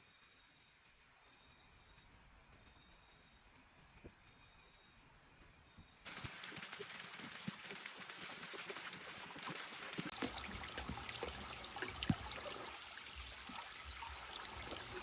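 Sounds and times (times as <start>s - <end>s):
steady hiss: 6.1s - 15.0s.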